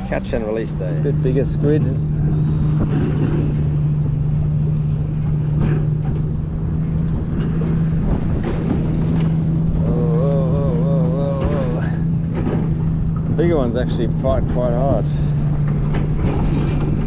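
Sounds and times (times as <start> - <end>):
boat motor running: 0.0 - 17.0
wavering voice-like tone: 9.8 - 12.2.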